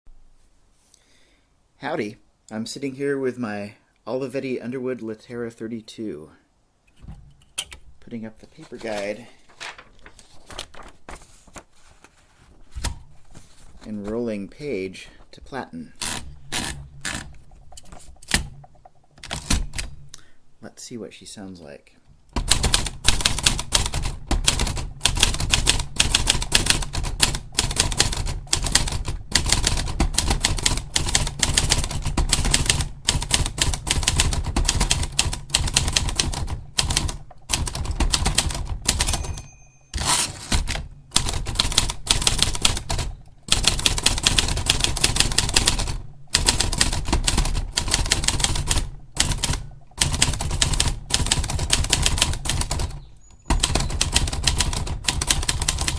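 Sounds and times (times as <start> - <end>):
typewriter typing: 16.0 - 20.0, 22.4 - 55.9
typewriter bell ring: 38.9 - 40.8.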